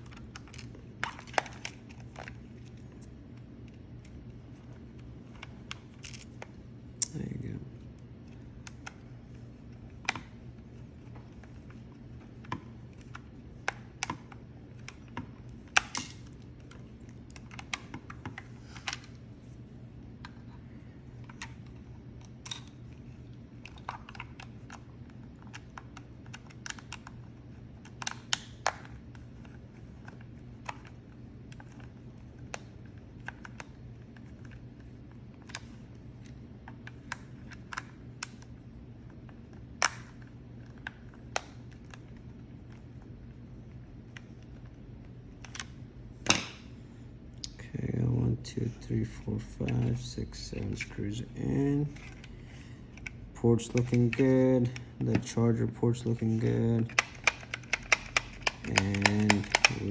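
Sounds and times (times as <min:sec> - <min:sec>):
steady low hum: 0:00.0 - 0:59.9
plastic controller parts clicking: 0:52.9 - 0:59.9.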